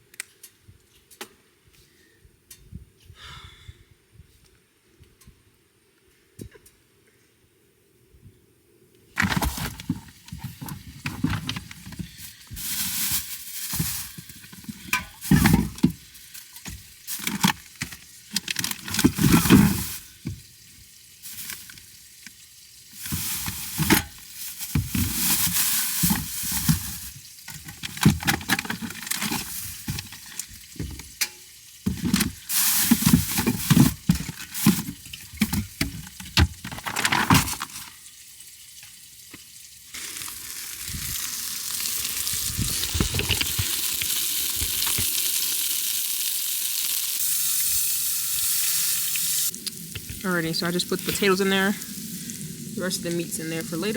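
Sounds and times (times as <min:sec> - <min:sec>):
food sizzling in a pan: 0:12.0 - 0:27.7, 0:29.4 - 0:35.2, 0:37.7 - 0:53.9.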